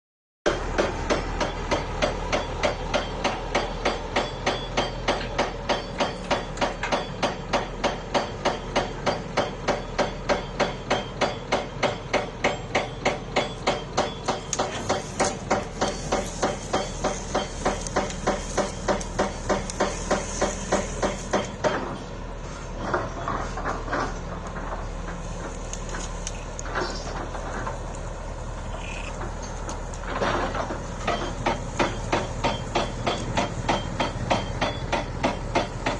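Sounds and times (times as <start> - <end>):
rhythmic hammering: 0.5 - 22.0, 30.4 - 35.9
machine noise: 0.5 - 35.9.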